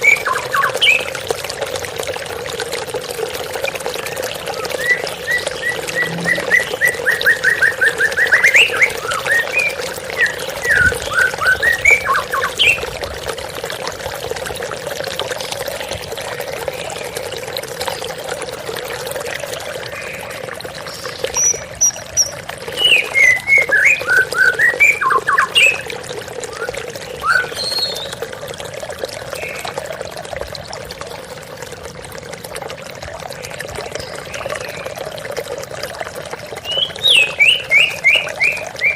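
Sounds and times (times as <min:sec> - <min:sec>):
bird singing whistled phrases: 0:00.0 - 0:01.1, 0:04.6 - 0:12.8, 0:21.3 - 0:25.9, 0:26.5 - 0:28.1, 0:36.6 - 0:38.9.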